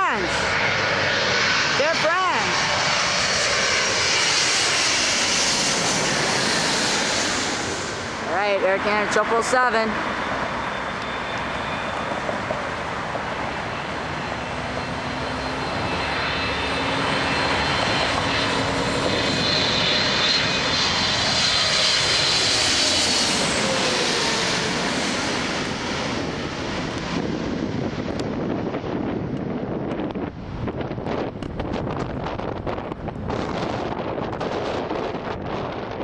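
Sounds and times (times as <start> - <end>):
jet engines roaring: 0.0 - 36.0
high fan whine: 3.9 - 21.2.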